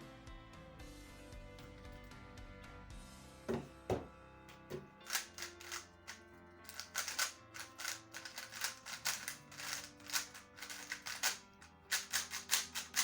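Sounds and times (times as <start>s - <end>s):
puzzle cube plastic clicks: 5.0s - 13.0s.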